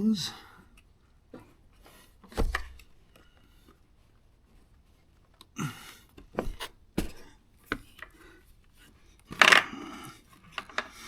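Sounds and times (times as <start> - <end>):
rustling scrape: 1.9 - 3.0, 6.4 - 8.0
sharp clicks and knocks: 2.4 - 3.0, 6.4 - 7.9.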